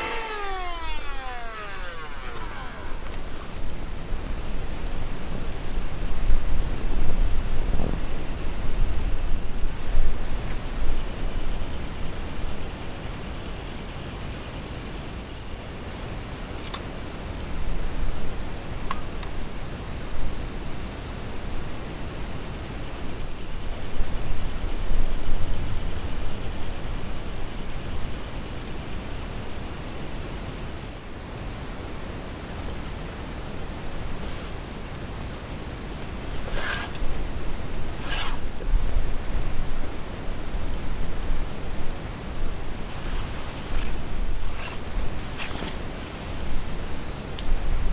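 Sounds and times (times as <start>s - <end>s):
small clicks: 0.0s - 3.6s
crickets chirring: 0.0s - 13.6s, 22.4s - 47.9s.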